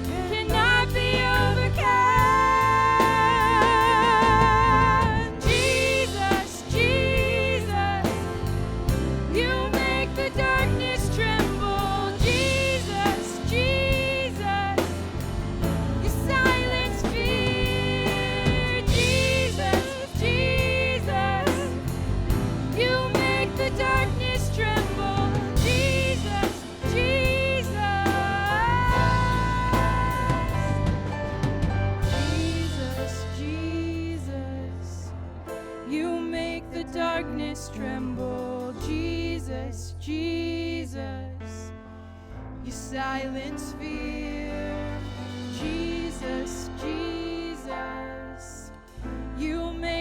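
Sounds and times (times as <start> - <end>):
person singing: 0.0 - 8.4, 9.3 - 15.0, 22.7 - 31.0
live worship band playing: 0.0 - 40.1, 42.0 - 50.0.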